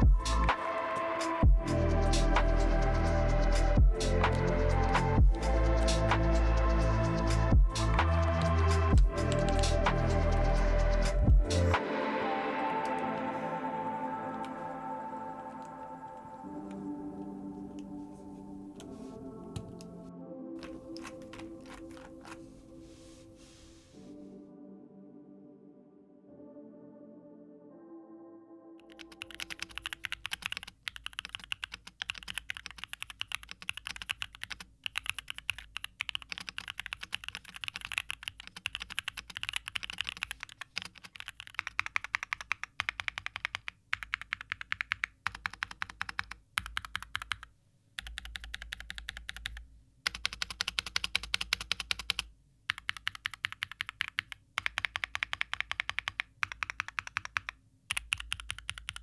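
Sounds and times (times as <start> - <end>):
fast mechanical keyboard typing: 1.7 - 11.7, 20.6 - 22.4, 28.8 - 59.0.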